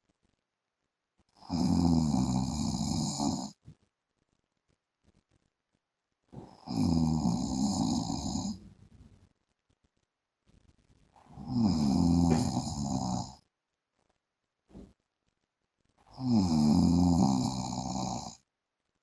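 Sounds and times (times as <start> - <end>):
man snoring: 1.4 - 3.6, 6.4 - 8.6, 11.3 - 13.4, 16.1 - 18.4.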